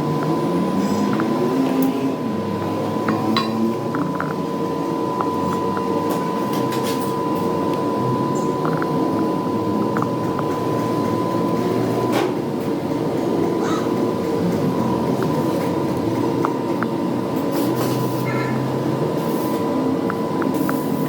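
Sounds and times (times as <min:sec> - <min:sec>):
machine high whine: 0:00.0 - 0:21.0.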